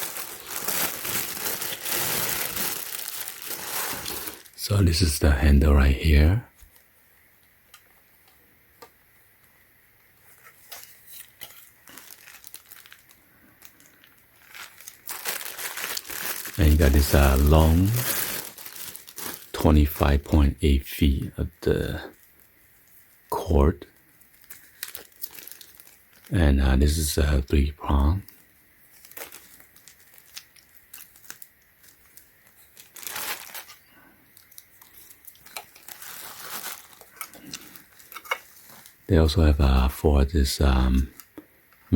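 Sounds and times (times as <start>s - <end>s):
plastic packaging crinkling: 0.0s - 4.6s, 10.3s - 20.3s, 22.1s - 26.3s, 27.9s - 39.1s.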